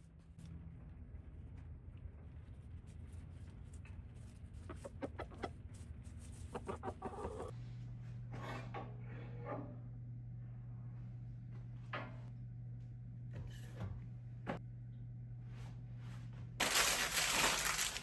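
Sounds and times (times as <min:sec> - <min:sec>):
chickens clucking: 0:04.6 - 0:05.6, 0:06.5 - 0:07.5.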